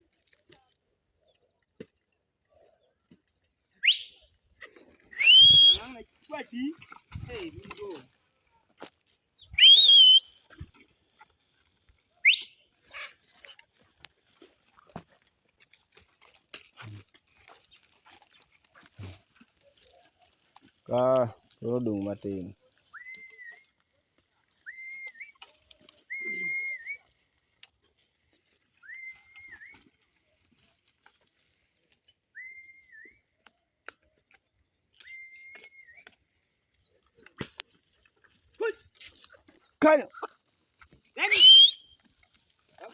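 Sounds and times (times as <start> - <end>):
rising whistled note: 5.2 - 5.8
short rising whistle: 5.2 - 5.8, 9.6 - 10.2.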